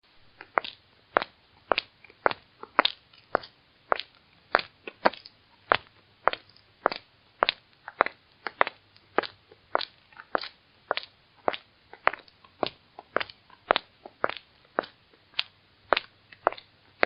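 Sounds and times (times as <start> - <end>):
high heels walking on hard floor: 0.4 - 15.0.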